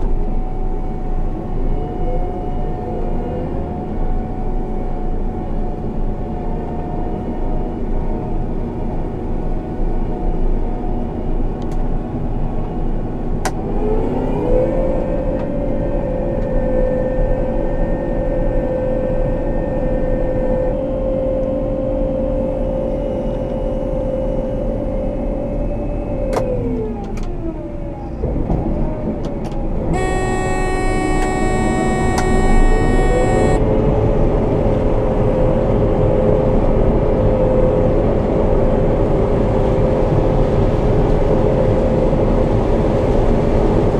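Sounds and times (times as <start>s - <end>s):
combine diesel engine running: 15.2s - 43.9s
horn-like tone: 29.9s - 33.9s.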